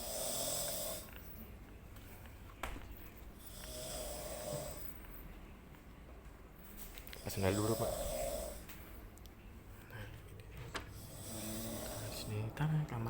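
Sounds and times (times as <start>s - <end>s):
person snoring loudly: 0.0s - 1.1s, 3.4s - 4.9s, 7.2s - 8.7s, 10.9s - 12.4s.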